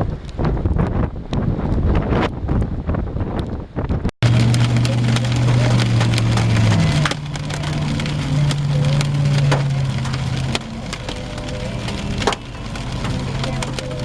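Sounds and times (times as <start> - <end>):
hailstones striking vehicle: 4.2 - 14.0.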